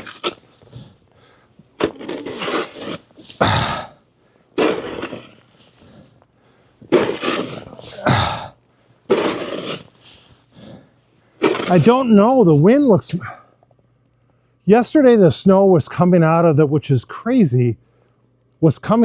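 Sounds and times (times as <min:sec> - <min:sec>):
snow shovel scraping snow: 0:00.0 - 0:00.8, 0:01.8 - 0:03.9, 0:04.6 - 0:06.0, 0:06.8 - 0:08.4, 0:09.1 - 0:10.4, 0:11.4 - 0:12.6.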